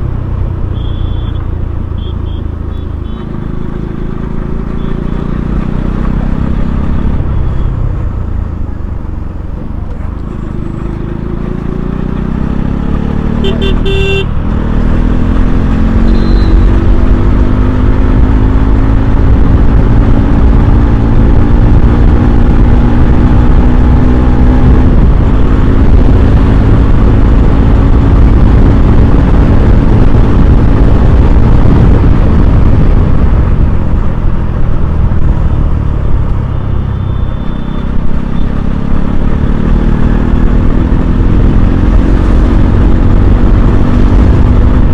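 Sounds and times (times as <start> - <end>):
motorcycle engine: 0.0 - 44.9
horn honking: 0.7 - 3.7, 13.3 - 14.4, 16.0 - 16.9, 36.5 - 38.5.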